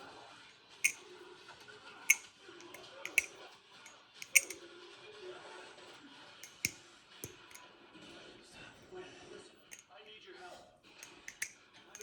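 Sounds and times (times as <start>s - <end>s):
butterfly knife clicking: 2.1s - 3.3s, 4.2s - 4.6s, 6.4s - 7.6s, 11.0s - 12.0s.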